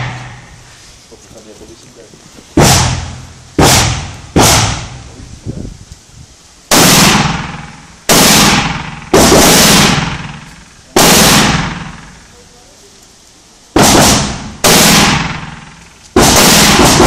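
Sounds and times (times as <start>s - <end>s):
rifle shots with long echo: 0.0s - 0.6s, 2.6s - 5.1s, 6.7s - 12.3s, 13.8s - 17.0s.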